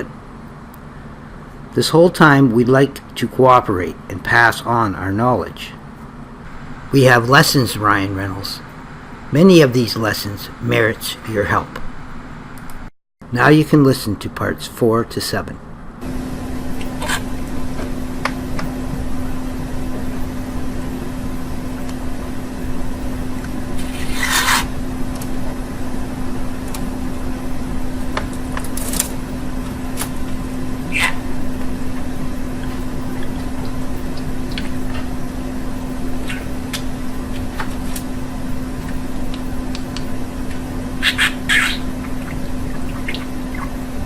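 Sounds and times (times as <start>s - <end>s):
steady low hum: 0.0s - 44.0s
budgerigar chirping: 30.9s - 31.2s, 41.0s - 43.7s.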